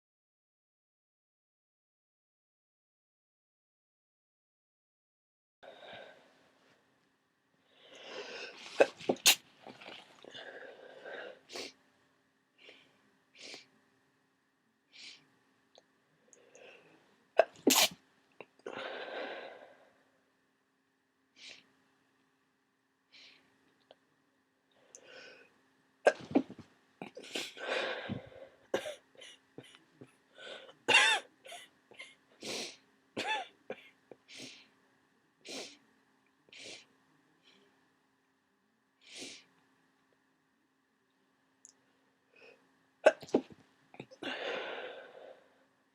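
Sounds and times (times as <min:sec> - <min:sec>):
person sneezing: 0:17.4 - 0:18.0
person coughing: 0:33.2 - 0:33.5.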